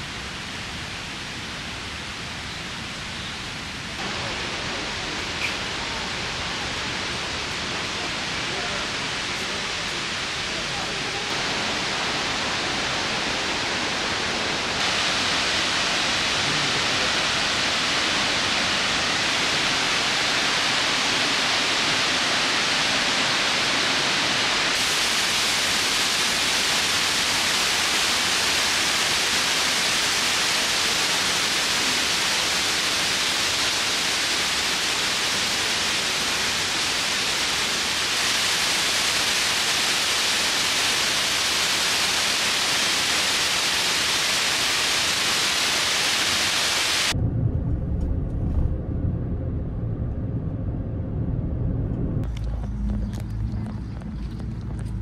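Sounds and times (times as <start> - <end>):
waterfall rushing: 3.6 - 47.2.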